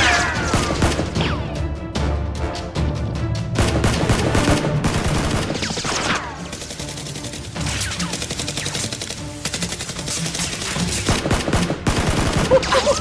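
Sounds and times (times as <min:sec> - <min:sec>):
rapid gunfire bursts: 0:00.4 - 0:01.3, 0:03.6 - 0:13.0.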